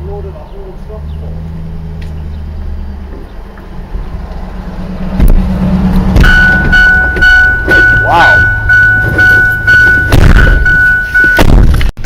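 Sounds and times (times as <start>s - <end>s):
vehicle engine rumbling: 0.0s - 12.0s
loud high-pitched tone: 6.2s - 11.5s.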